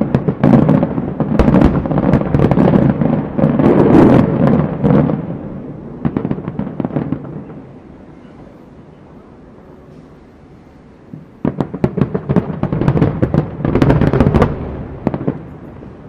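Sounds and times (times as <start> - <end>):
fireworks booms and crackles: 0.0 - 7.8, 11.0 - 16.0
low echoing rumble: 1.4 - 6.1.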